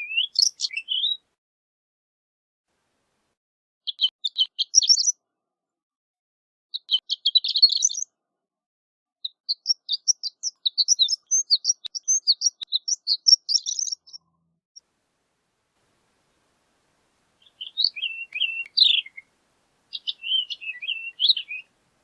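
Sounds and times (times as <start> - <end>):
lark singing tinkling notes: 9.5 - 14.2, 17.4 - 19.3, 19.9 - 21.7.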